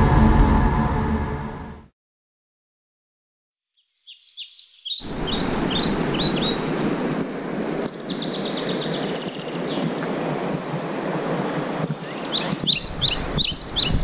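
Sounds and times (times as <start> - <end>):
songbird chirping: 3.6 - 11.2, 11.9 - 14.0
rushing outdoor noise: 5.0 - 14.0.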